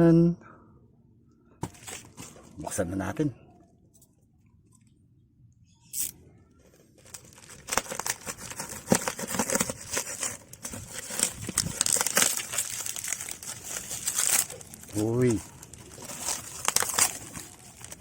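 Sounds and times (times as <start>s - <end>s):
packaging tearing and crinkling: 7.0s - 18.0s.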